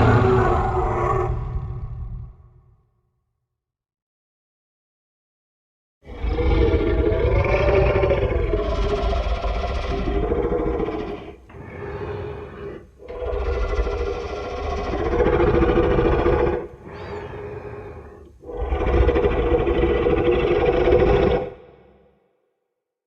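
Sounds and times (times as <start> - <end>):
giant monster roars: 0.0 - 2.7, 6.1 - 22.0.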